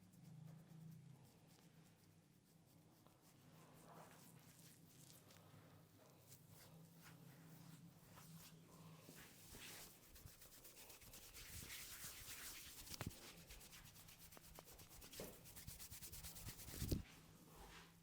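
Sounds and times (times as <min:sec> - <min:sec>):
hands rubbing hair: 0:09.1 - 0:17.0.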